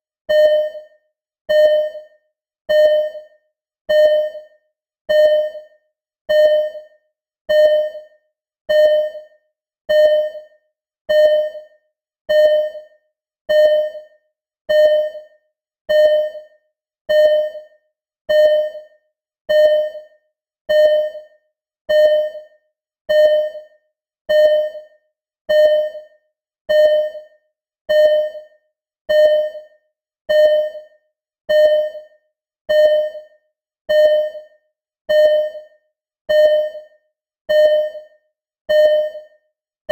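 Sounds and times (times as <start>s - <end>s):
heart monitor beeping: 0.3s - 0.9s, 1.5s - 2.1s, 2.7s - 3.3s, 3.9s - 4.5s, 5.1s - 5.7s, 6.3s - 6.9s, 7.5s - 8.1s, 8.7s - 9.3s, 9.9s - 10.5s, 11.1s - 11.7s, 12.3s - 12.9s, 13.5s - 14.1s, 14.7s - 15.3s, 15.9s - 16.5s, 17.1s - 17.7s, 18.3s - 18.9s, 19.5s - 20.1s, 20.7s - 21.3s, 21.9s - 22.5s, 23.1s - 23.7s, 24.3s - 24.9s, 25.5s - 26.1s, 26.7s - 27.3s, 27.9s - 28.5s, 29.1s - 29.7s, 30.3s - 30.9s, 31.5s - 32.1s, 32.7s - 33.3s, 33.9s - 34.5s, 35.1s - 35.7s, 36.3s - 36.9s, 37.5s - 38.1s, 38.7s - 39.3s.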